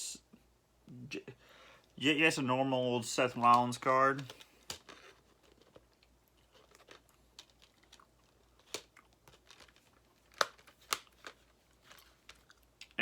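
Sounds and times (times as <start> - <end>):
items being handled: 3.1 - 13.0.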